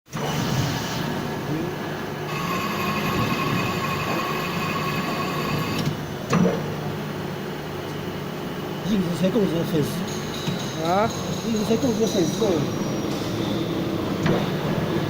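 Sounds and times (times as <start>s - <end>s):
machine whine: 0.1s - 6.1s
lathe machine noise: 2.3s - 5.9s, 8.8s - 15.0s.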